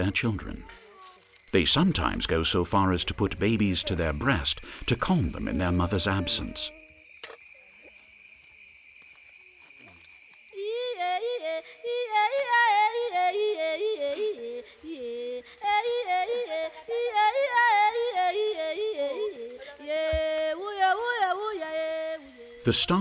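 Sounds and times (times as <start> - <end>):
voices singing in yodel style: 1.6 - 7.0, 10.6 - 23.0.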